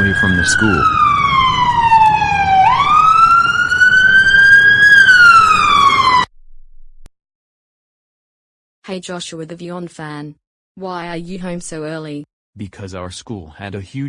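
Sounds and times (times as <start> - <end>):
wailing siren: 0.0 - 6.3.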